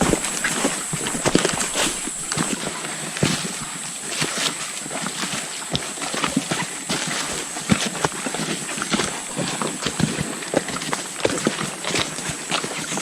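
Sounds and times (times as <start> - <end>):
boots crunching on forest floor: 0.0 - 5.2, 5.8 - 11.1
steady high-pitched hum: 0.0 - 11.2.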